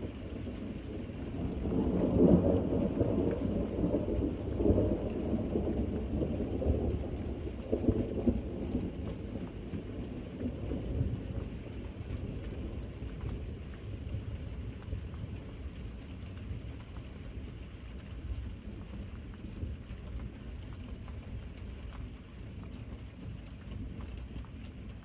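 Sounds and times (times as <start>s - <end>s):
rolling thunder: 0.0s - 14.3s
steady rain: 0.0s - 25.0s.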